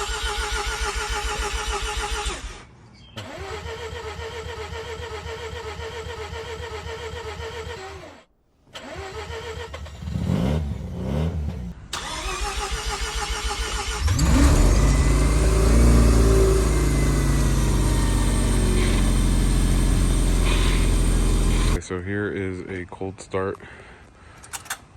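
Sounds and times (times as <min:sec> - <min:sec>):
starter cranking car engine: 0:00.0 - 0:10.2, 0:11.9 - 0:21.8
rotary car engine running: 0:08.8 - 0:21.8.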